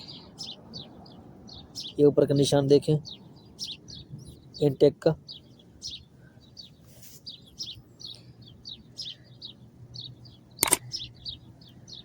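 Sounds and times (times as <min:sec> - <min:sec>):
small birds chirping: 0:00.0 - 0:12.0
sharp metallic clank: 0:10.6 - 0:10.8.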